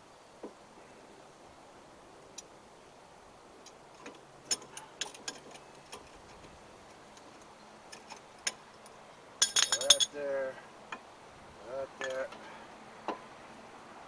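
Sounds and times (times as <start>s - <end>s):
hand tools clicking and clinking: 4.0s - 6.4s, 7.9s - 10.2s, 12.0s - 12.4s.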